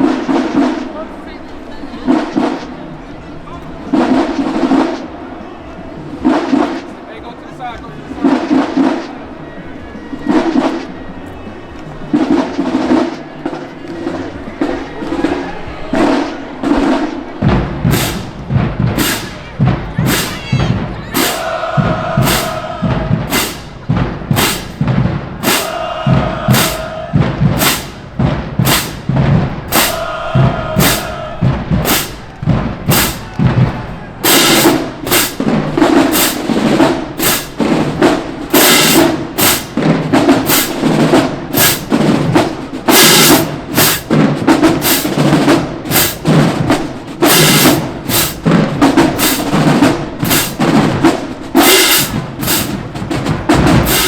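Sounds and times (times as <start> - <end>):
full marching band playing: 0.0 - 54.0
marching drumline cadence: 0.0 - 54.0
held brass chords: 16.8 - 33.6.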